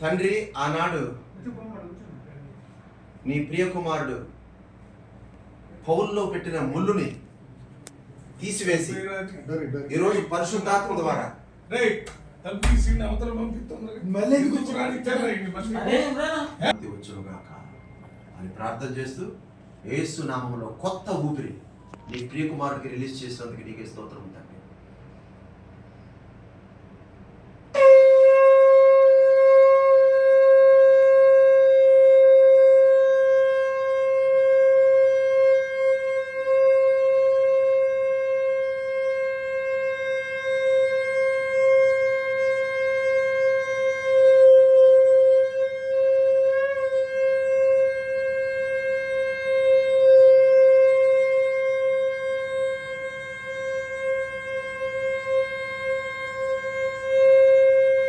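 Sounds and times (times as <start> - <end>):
steady horn-like tone: 12.7 - 14.0.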